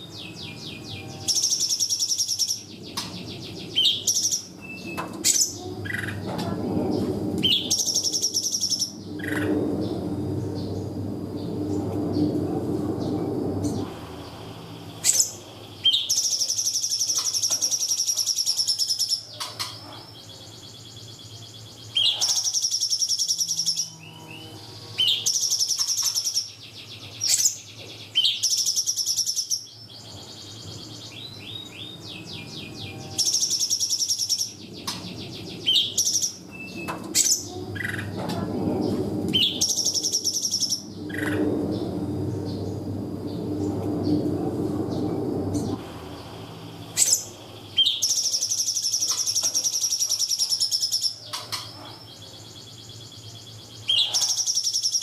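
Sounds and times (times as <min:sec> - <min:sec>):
songbird trilling: 0:00.1 - 0:06.6, 0:07.4 - 0:09.5, 0:14.8 - 0:38.2, 0:46.1 - 0:55.0.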